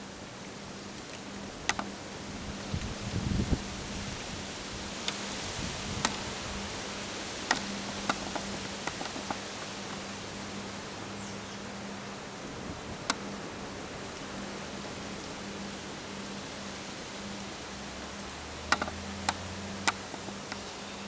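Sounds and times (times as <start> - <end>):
wind hissing: 2.2 - 11.5
sharp ticks: 7.4 - 10.1, 18.0 - 20.8.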